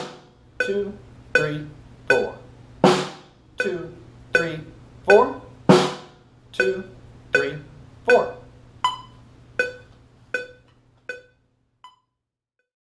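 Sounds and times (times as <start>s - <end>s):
electronic metronome clicking: 0.0s - 3.0s, 3.6s - 5.5s, 6.6s - 12.2s.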